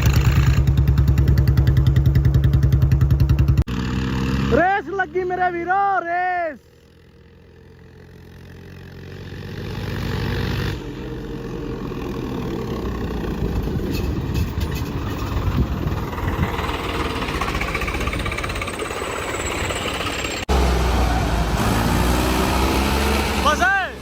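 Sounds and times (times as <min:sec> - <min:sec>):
diesel tractor engines at full throttle: 0:00.0 - 0:05.7, 0:06.6 - 0:24.0.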